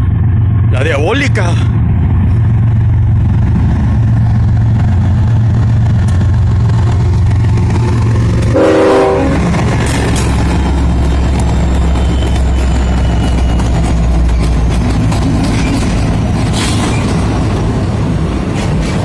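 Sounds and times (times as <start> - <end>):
diesel locomotive engine drone: 0.0 - 19.0
air horn blast: 8.5 - 9.6.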